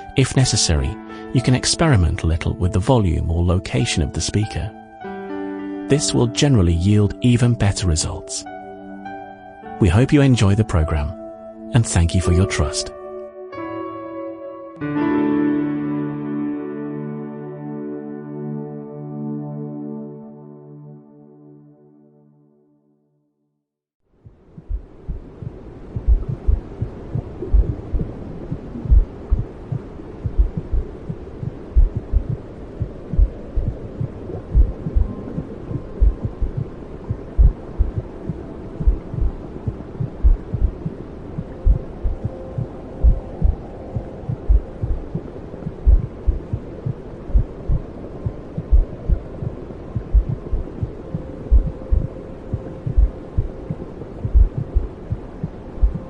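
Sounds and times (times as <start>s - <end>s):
womb-like noise with faint hum: 24.1s - 56.0s
low heartbeat thumps: 24.2s - 56.0s.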